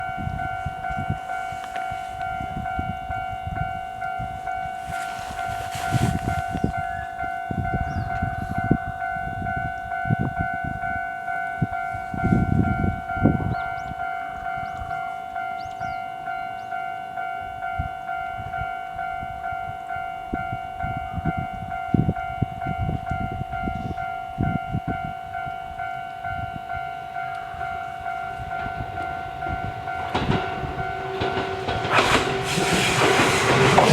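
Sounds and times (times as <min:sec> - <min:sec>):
level-crossing alarm ringing: 0:00.0 - 0:33.9
low rumbles and thumps: 0:28.4 - 0:33.9.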